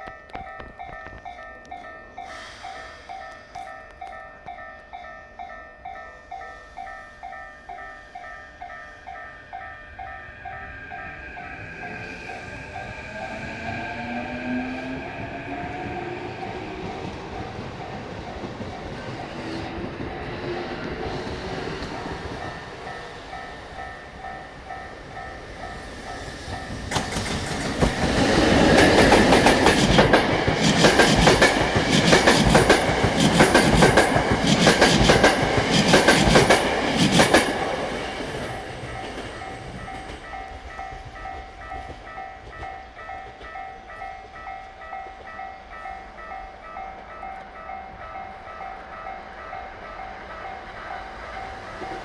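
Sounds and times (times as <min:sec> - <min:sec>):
level crossing warning bell: 0:00.0 - 0:52.0
train wheels clacking over rail joints: 0:15.8 - 0:45.5.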